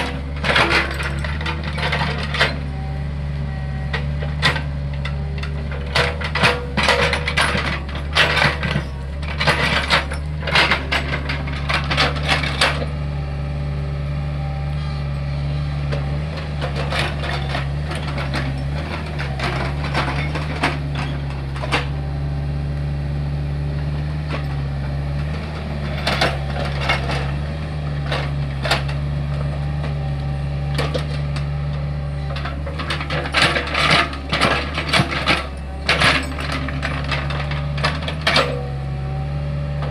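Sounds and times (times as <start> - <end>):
excavator diesel engine: 0.0 - 39.9.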